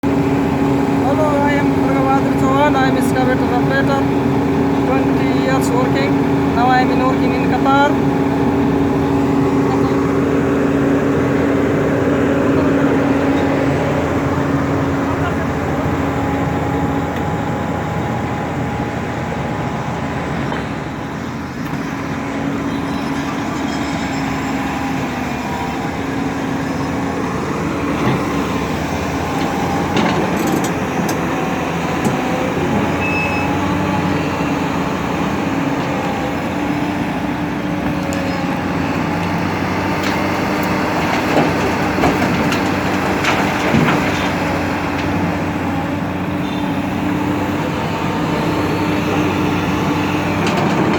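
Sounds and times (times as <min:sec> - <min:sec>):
excavator diesel engine running: 0:00.0 - 0:50.9
metal clanks and knocks: 0:29.3 - 0:32.9, 0:40.0 - 0:45.3, 0:50.3 - 0:50.9.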